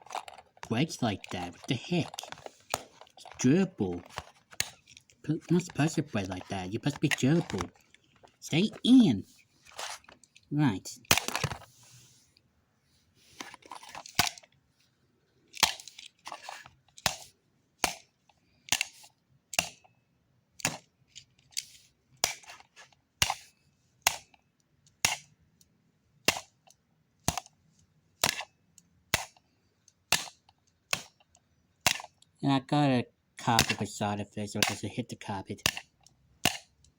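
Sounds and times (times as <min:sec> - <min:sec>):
plastic alarm clock being struck: 0:26.2 - 0:26.6, 0:28.2 - 0:28.5.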